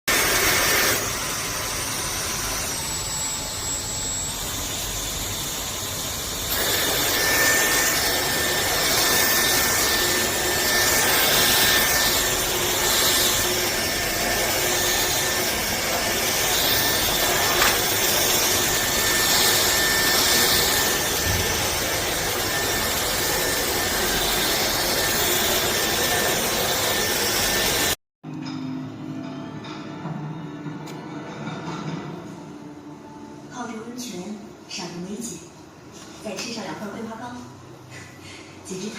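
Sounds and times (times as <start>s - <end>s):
vacuum cleaner running: 0.1s - 28.0s.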